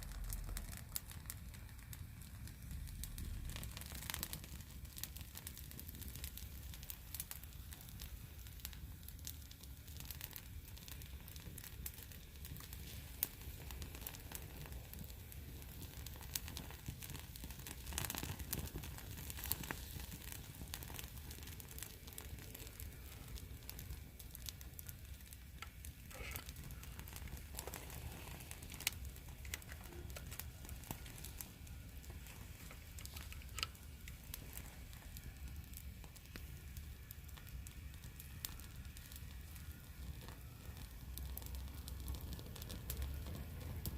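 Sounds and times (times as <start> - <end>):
steady low rumble: 0.0 - 5.1
bonfire crackling and popping: 0.0 - 43.9.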